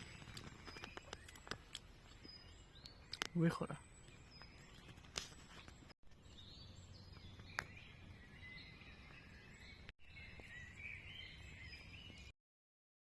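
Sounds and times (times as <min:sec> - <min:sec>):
birds singing: 0:00.0 - 0:12.3.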